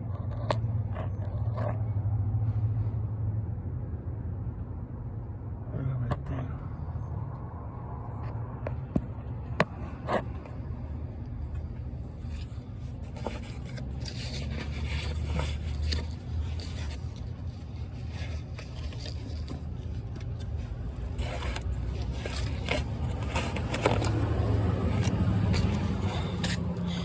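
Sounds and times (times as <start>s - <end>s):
hand tools scraping and clicking: 12.2s - 27.0s.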